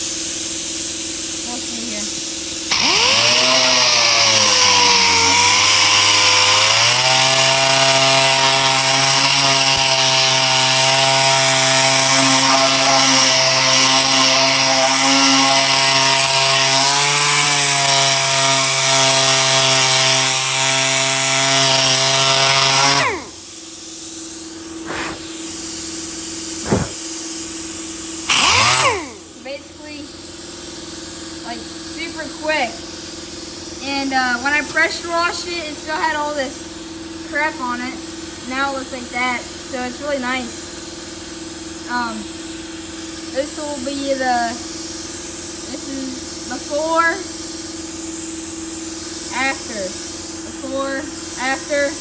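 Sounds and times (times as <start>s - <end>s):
sander grinding sheet metal: 2.7s - 23.5s, 24.6s - 25.4s, 26.6s - 27.0s, 28.3s - 29.4s.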